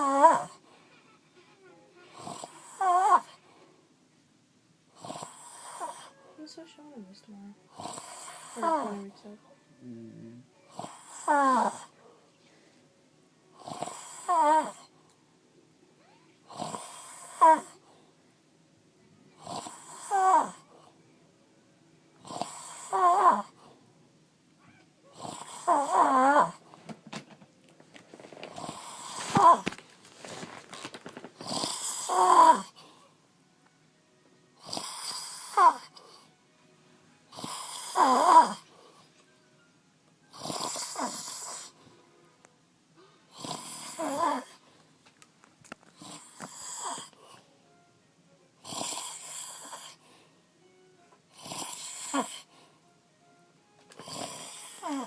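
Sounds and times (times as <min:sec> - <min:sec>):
man snoring with whistling pitch: 0:05.0 - 0:06.1, 0:10.7 - 0:11.9, 0:19.4 - 0:20.6, 0:22.2 - 0:23.5, 0:25.2 - 0:26.6, 0:31.4 - 0:32.7, 0:34.6 - 0:35.9, 0:37.3 - 0:38.6, 0:40.4 - 0:41.7, 0:43.3 - 0:44.5, 0:48.6 - 0:50.0, 0:51.4 - 0:52.5, 0:54.1 - 0:55.0.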